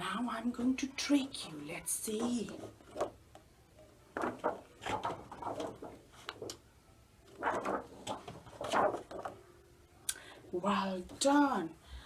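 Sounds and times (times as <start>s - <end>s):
paper cards shuffling: 2.0s - 3.2s, 4.1s - 6.6s, 7.3s - 9.4s.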